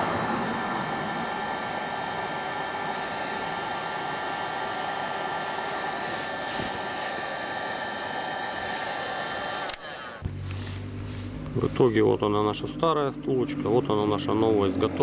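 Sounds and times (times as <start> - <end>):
heat gun blowing: 0.0 - 12.0.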